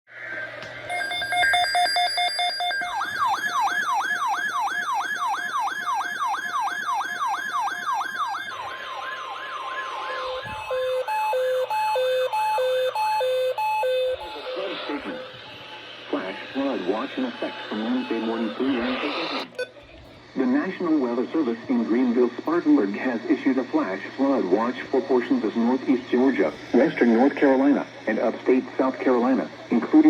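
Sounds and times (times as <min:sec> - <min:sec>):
hi-lo siren: 0:00.9 - 0:19.8
pulsing siren tone: 0:00.9 - 0:19.8
yelp siren: 0:00.9 - 0:19.8.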